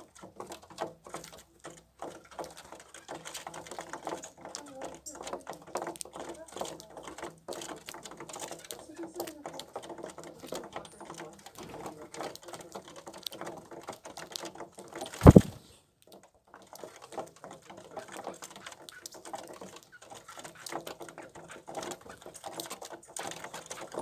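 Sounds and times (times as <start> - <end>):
loud thump: 15.2 - 15.6.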